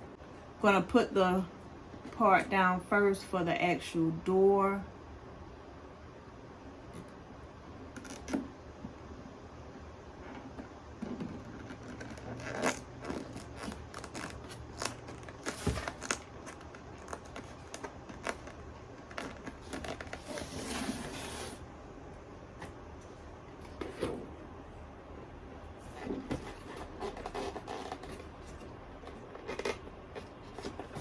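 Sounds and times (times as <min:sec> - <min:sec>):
scraping rustle: 0:11.1 - 0:21.6.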